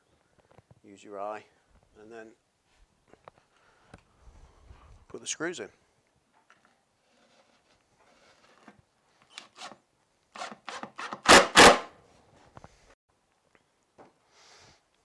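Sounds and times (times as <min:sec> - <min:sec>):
screws driven into wood: 0:09.3 - 0:09.8, 0:10.4 - 0:11.9.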